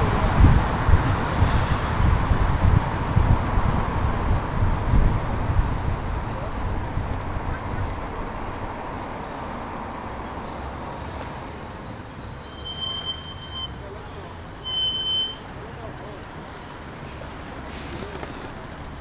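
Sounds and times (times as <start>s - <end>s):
rolling road noise: 0.0s - 19.0s
wind: 0.0s - 19.0s
high brake squeal: 11.0s - 18.7s.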